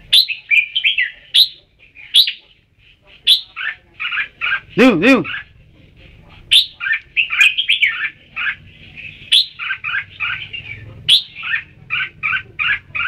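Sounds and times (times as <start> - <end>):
bird singing chirpy phrases: 0.0 - 2.5, 6.5 - 13.0.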